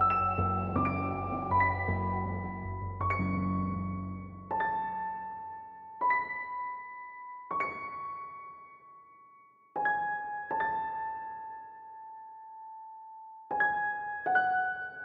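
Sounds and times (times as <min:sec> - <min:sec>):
slow piano melody: 0:00.0 - 0:15.0.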